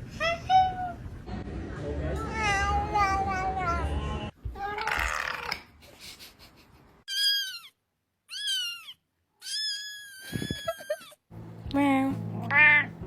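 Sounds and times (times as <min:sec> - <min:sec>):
cat meowing: 0:07.1 - 0:11.1, 0:12.4 - 0:13.0.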